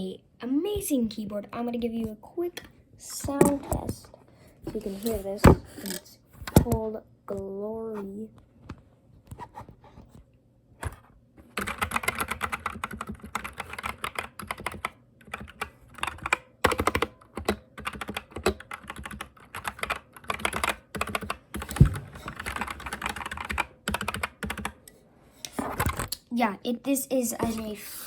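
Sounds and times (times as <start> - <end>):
mechanical keyboard typing: 11.6 - 24.8.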